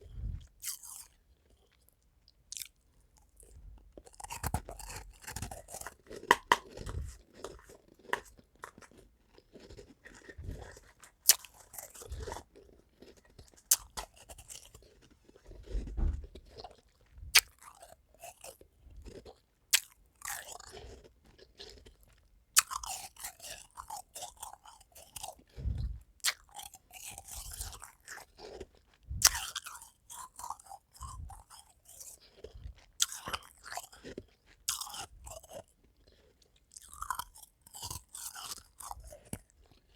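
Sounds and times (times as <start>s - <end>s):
person crunching ice: 4.2s - 14.9s.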